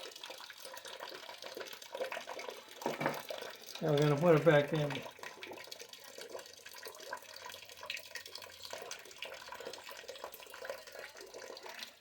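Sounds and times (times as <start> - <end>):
water trickling: 0.0 - 12.0.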